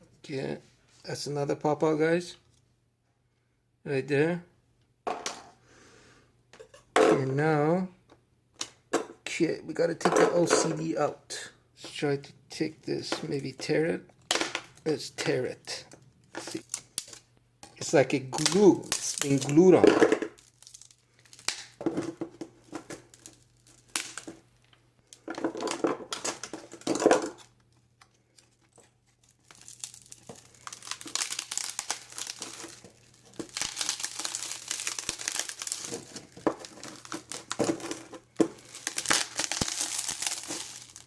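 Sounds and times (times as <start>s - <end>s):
adhesive and plastic crackling: 15.8s - 41.0s.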